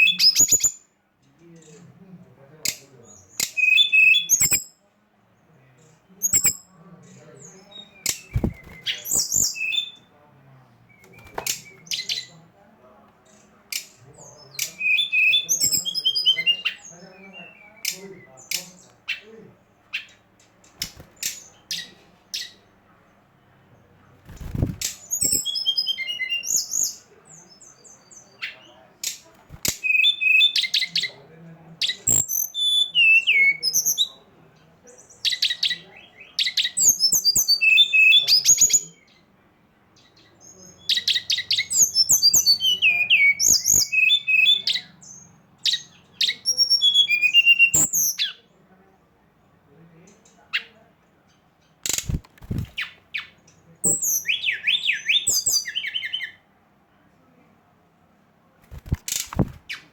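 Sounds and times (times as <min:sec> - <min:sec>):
songbird chirps and whistles: 0:00.0 - 0:01.0, 0:02.6 - 0:04.9, 0:05.5 - 0:12.5, 0:13.2 - 0:19.3, 0:19.9 - 0:22.7, 0:23.7 - 0:31.2, 0:31.8 - 0:39.3, 0:40.0 - 0:48.6, 0:50.1 - 0:56.5, 0:58.6 - 0:59.9
sharp clicks: 0:08.1 - 0:09.3, 0:20.4 - 0:21.5, 0:51.8 - 0:53.0, 0:58.7 - 0:59.8.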